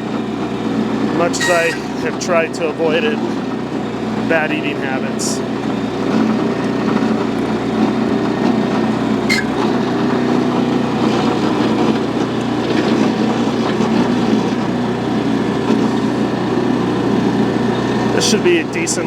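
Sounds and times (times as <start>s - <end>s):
backhoe engine running: 0.0s - 19.0s
bucket digging into dirt: 9.3s - 14.8s.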